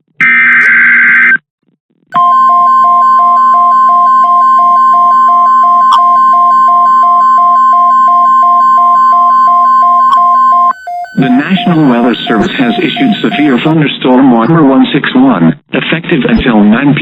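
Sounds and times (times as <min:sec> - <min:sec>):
steady warning alarm tone: 0:02.2 - 0:13.7
faint beeping tone: 0:07.9 - 0:13.7.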